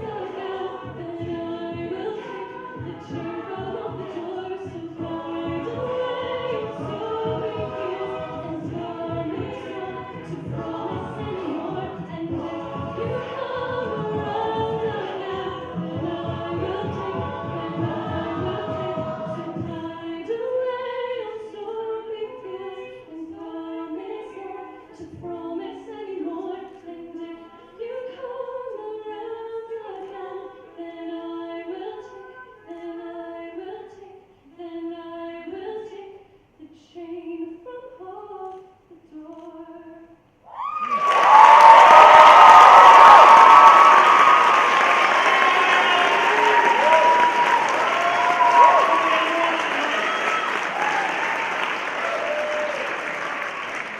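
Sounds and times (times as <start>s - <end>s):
a cappella group singing in harmony: 0.0s - 40.3s, 41.2s - 53.3s.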